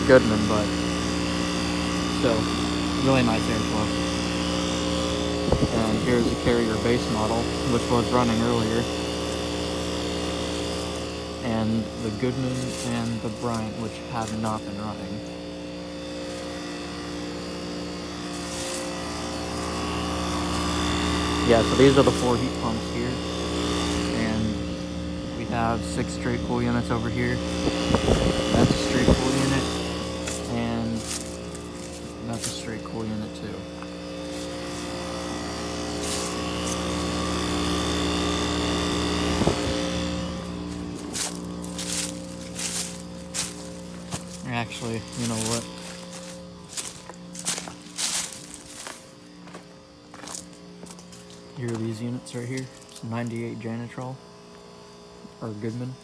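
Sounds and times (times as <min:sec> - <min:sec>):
fan whoosh: 0:00.0 - 0:12.3, 0:15.9 - 0:32.3, 0:34.0 - 0:44.8
heat pump humming: 0:00.0 - 0:56.0.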